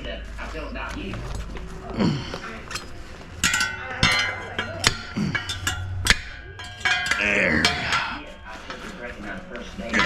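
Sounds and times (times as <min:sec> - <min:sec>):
low background murmur: 0:00.0 - 0:10.0.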